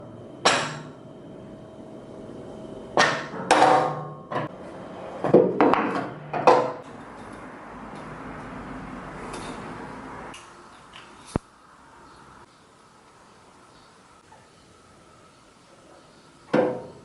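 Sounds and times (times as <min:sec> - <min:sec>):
faint background hum: 0:00.0 - 0:17.0
sharp ringing knocks: 0:00.4 - 0:01.0.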